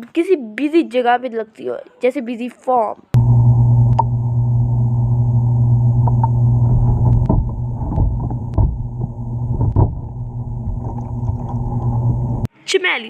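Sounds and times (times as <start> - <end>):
low hum with overtones: 3.2 - 12.5.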